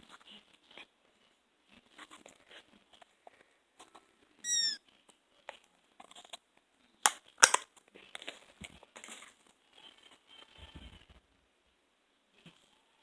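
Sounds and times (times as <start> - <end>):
high-pitched falling squeak: 4.4 - 4.8
slime sharp pops: 7.1 - 7.6.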